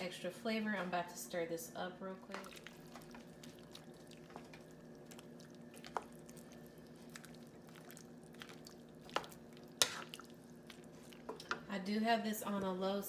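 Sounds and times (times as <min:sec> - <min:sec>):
steady low hum: 0:00.0 - 0:13.0
spoon stirring soup: 0:02.3 - 0:11.7.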